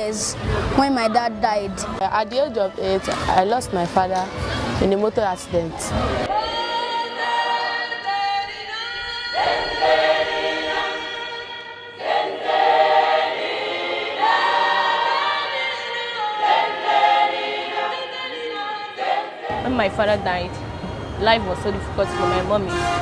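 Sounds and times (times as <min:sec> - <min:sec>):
choir singing held notes: 0:06.0 - 0:20.1.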